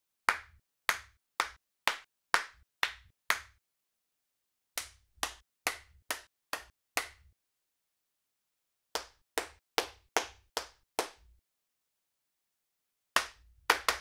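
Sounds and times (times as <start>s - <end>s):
hand claps: 0.3s - 3.6s, 4.8s - 7.3s, 9.0s - 11.4s, 13.2s - 14.0s.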